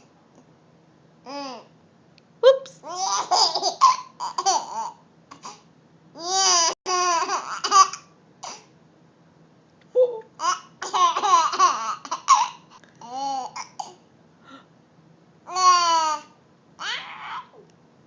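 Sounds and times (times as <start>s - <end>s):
baby giggling: 2.8s - 5.5s, 10.0s - 13.7s.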